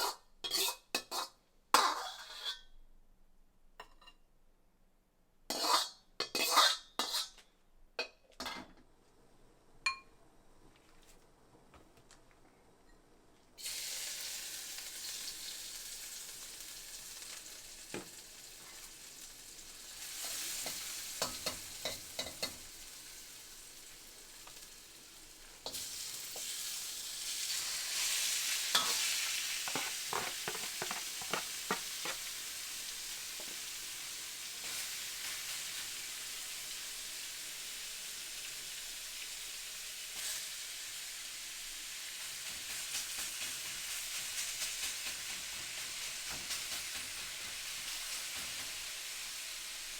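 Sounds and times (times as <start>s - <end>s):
food sizzling in hot oil: 13.6s - 49.9s
spatula clacking against pan: 20.6s - 22.7s, 28.7s - 32.3s.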